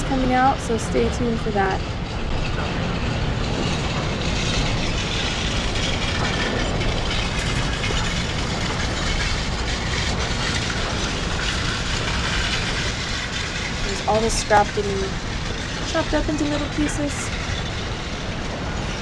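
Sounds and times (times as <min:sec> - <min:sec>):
clatter of metal: 0:00.0 - 0:19.0
shredding machinery rumble: 0:00.0 - 0:19.0.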